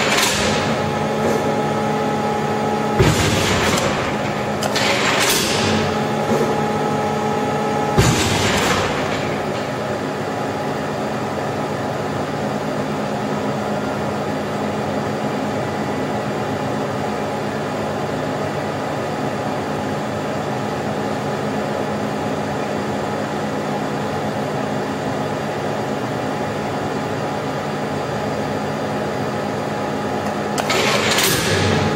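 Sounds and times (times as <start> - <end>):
hydraulic pump humming: 0.0 - 14.0, 27.5 - 31.9.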